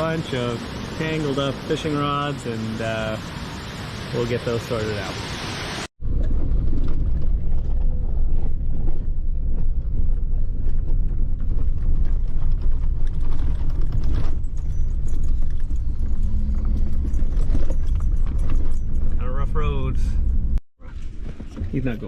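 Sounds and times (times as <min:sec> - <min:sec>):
truck engine rumble: 0:00.0 - 0:22.0
rattling and knocking over bumps: 0:06.1 - 0:19.2.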